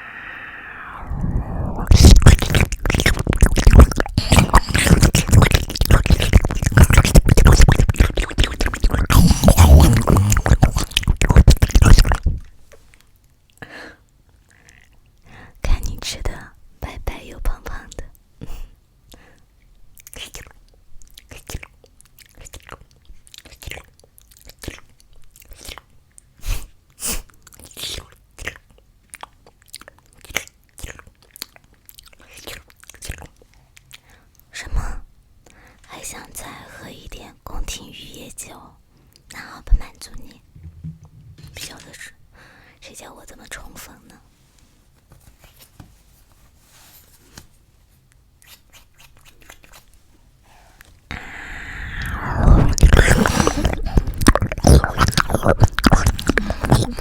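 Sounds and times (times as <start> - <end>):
person imitating pig eating: 0.0 - 12.5, 20.0 - 34.0, 48.4 - 49.9, 51.1 - 57.0
wet smacking and chewing clicks: 1.9 - 13.6, 20.0 - 26.3, 27.3 - 34.1, 48.1 - 49.9, 52.0 - 57.0.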